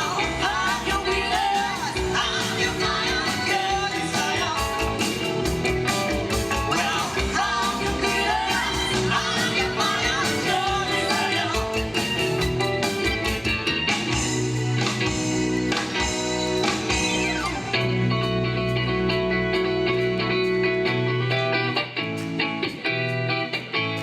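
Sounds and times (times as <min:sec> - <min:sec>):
woman singing: 0:00.0 - 0:05.0, 0:06.7 - 0:11.9
live rock band music: 0:00.0 - 0:24.0.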